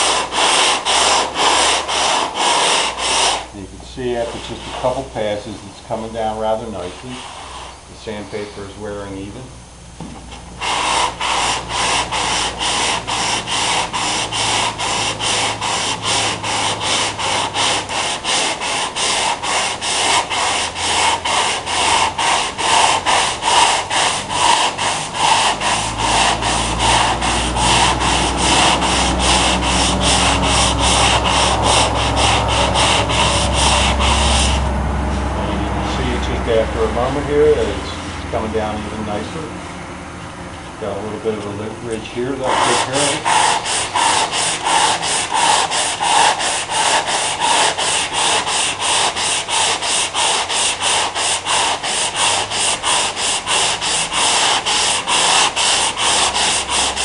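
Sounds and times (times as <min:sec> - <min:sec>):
sandpaper rasping back and forth: 0:00.0 - 0:05.4, 0:10.6 - 0:34.6, 0:41.3 - 0:57.0.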